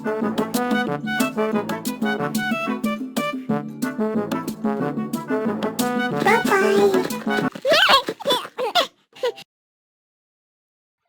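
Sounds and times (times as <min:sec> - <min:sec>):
children's song with music: 0:00.0 - 0:07.5.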